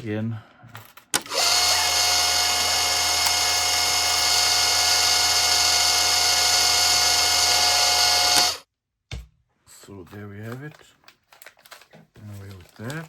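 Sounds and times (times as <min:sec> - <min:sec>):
high-speed electric tool whining: 0:01.2 - 0:08.6.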